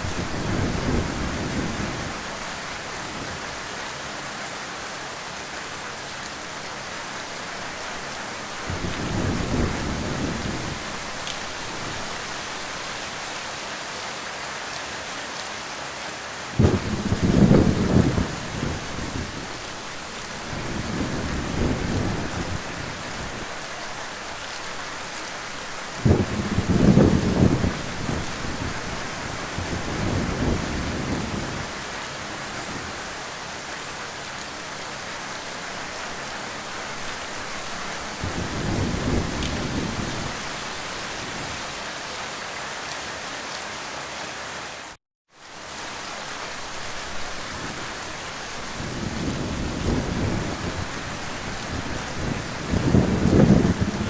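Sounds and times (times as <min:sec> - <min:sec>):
thunder rumbling and cracking: 0:00.0 - 0:02.3, 0:08.6 - 0:12.1, 0:16.6 - 0:23.4, 0:26.0 - 0:31.8, 0:38.2 - 0:41.6, 0:47.5 - 0:54.0
heavy rain: 0:00.0 - 0:54.0.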